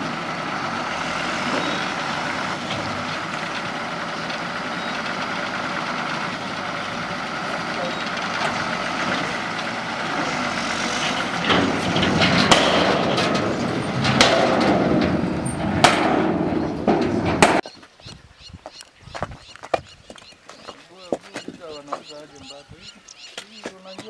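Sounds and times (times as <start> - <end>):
engine running: 0.0 - 17.6
sharp knocks and clanks: 0.0 - 17.7.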